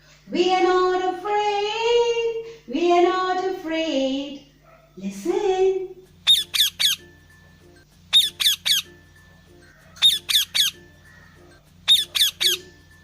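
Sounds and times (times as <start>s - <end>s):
parrot squawking: 6.2s - 7.1s, 8.1s - 9.0s, 9.6s - 13.0s.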